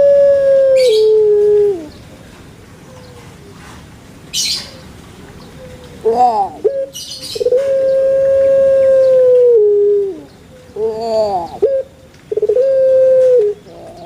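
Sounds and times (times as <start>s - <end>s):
dove cooing: 0.0s - 2.0s, 5.6s - 14.0s
rustling: 1.3s - 6.1s.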